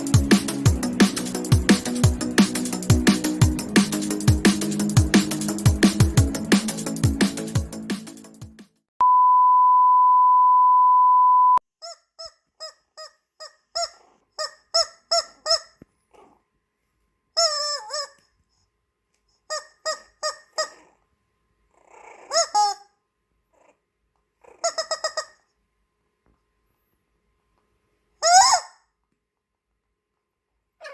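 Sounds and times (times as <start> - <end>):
high beep tone: 9.0 - 11.6
rubber squeaky toy squeaking: 11.8 - 16.4, 17.3 - 18.4, 19.4 - 21.0, 21.8 - 23.0, 24.4 - 25.6, 28.2 - 28.9.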